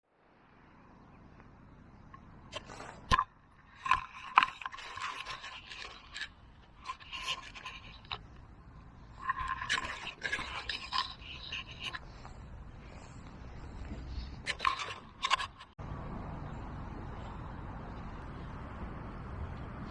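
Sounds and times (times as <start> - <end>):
metal detector coil scraping ground: 2.5 - 15.8.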